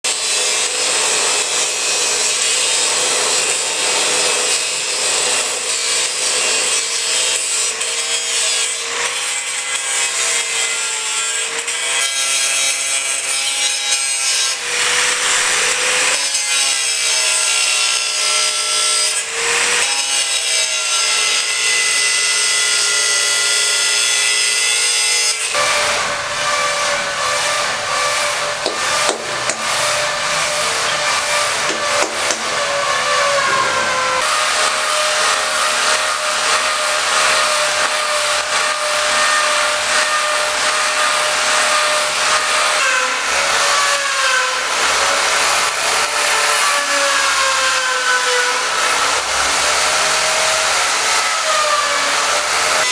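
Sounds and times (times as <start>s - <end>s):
power tool whine: 12.4s - 52.9s.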